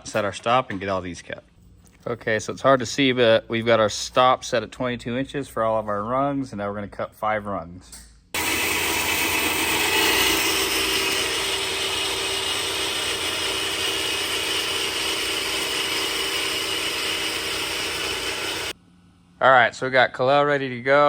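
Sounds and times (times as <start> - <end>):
bandsaw cutting metal: 8.4 - 18.8.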